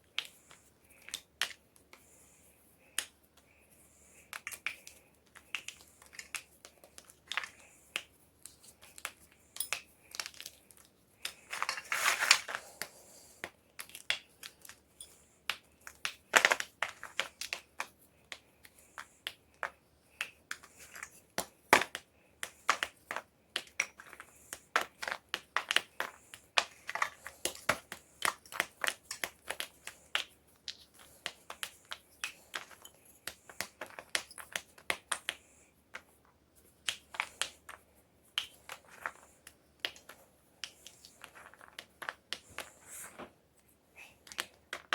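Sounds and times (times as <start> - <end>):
chalk crunching and cracking: 4.0 - 14.8.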